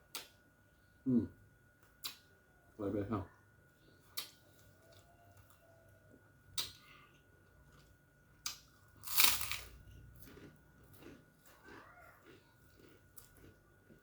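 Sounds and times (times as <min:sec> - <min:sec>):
person chewing with smacks: 0:10.0 - 0:14.0.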